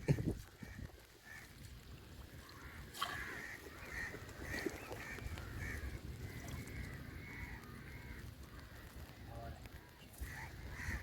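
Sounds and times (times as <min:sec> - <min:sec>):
birds calling: 0:02.4 - 0:11.0.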